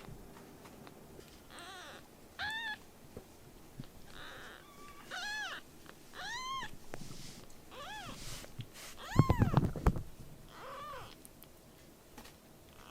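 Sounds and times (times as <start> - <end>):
kitten meowing: 1.5 - 2.8, 4.1 - 6.8, 7.7 - 8.2, 9.0 - 9.7, 10.5 - 11.2.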